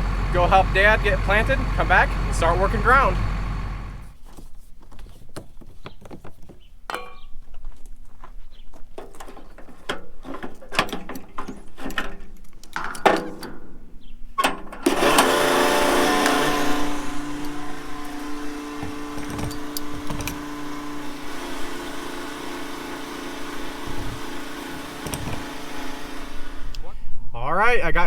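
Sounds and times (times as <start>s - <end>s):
motor running: 0.0s - 4.2s, 14.9s - 27.0s.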